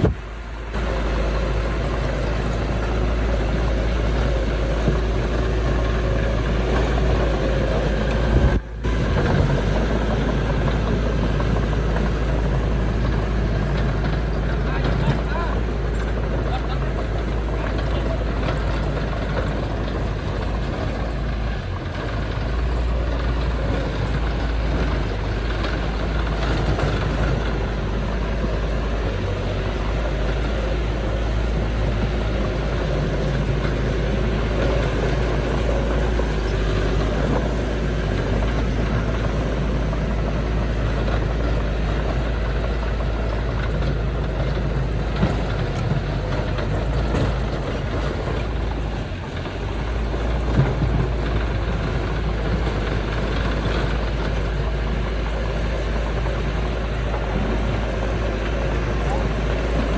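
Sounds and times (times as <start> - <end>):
diesel engine rumbling: 0.0 - 59.9.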